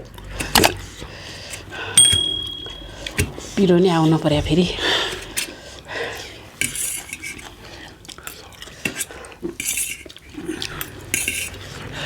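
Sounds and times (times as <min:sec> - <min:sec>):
utensils clinking on a plate: 0:02.0 - 0:03.4.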